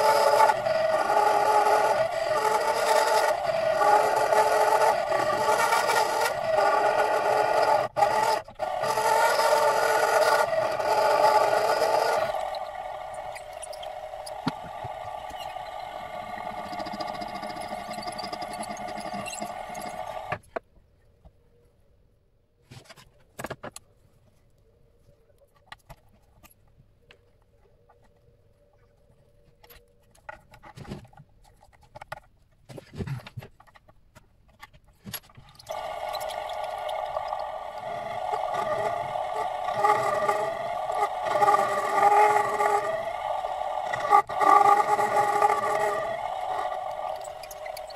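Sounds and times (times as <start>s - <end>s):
lathe whining: 0.0s - 20.4s, 35.6s - 47.9s.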